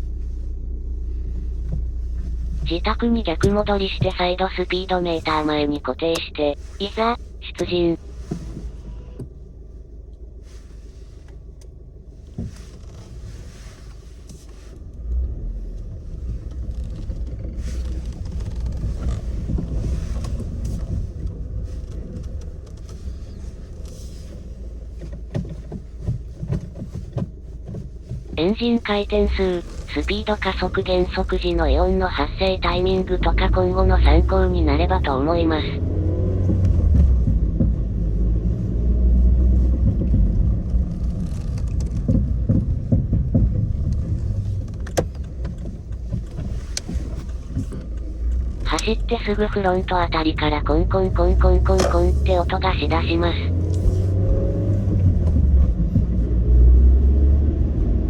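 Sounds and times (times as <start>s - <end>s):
car engine and road rumble: 0.0s - 58.0s.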